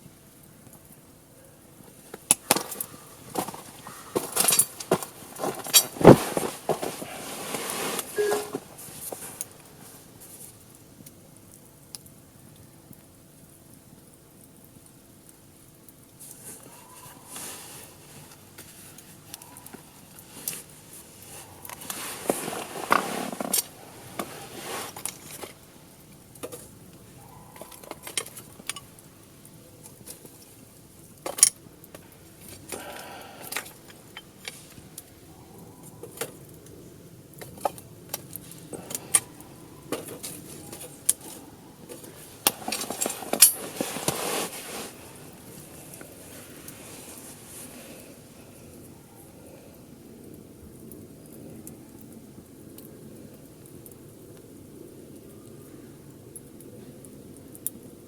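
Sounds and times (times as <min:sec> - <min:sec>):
wood fire crackling and popping: 0:00.0 - 0:58.0
hissing rushing flame: 0:17.4 - 0:27.1.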